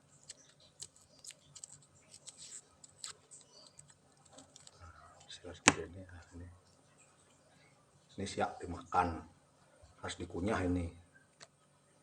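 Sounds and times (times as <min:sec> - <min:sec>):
papery skin clicks and crackles: 0:00.0 - 0:06.4.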